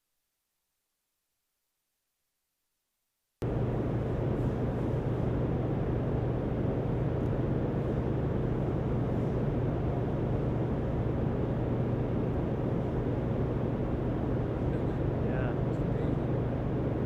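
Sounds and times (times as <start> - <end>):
constant low rumble: 3.4 - 17.0
low machinery hum: 3.4 - 17.0.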